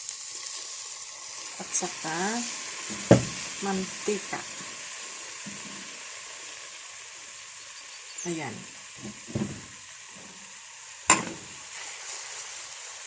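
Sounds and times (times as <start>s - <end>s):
sausage sizzling in oil: 0.0s - 13.0s
sharp knock: 2.9s - 3.4s, 11.1s - 11.5s.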